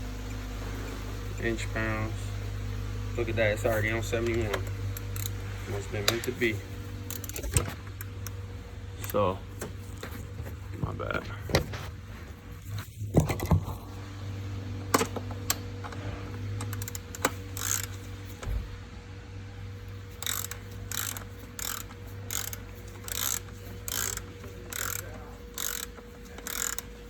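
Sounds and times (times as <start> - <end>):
socket ratchet clicking: 4.0 - 5.4, 6.0 - 8.4, 16.5 - 18.2, 20.0 - 27.0.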